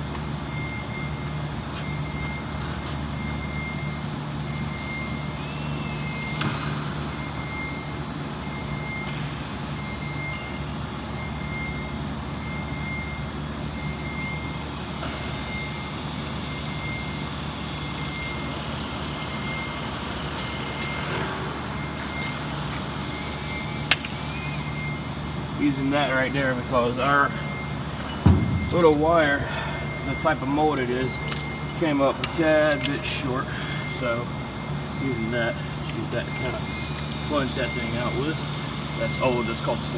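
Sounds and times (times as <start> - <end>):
machinery hum: 0.0 - 39.9
high beeping tone: 24.4 - 38.4.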